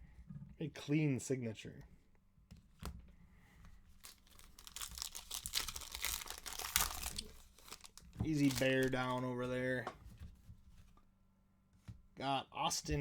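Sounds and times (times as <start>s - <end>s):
plastic crinkling and rustling: 3.7s - 11.0s.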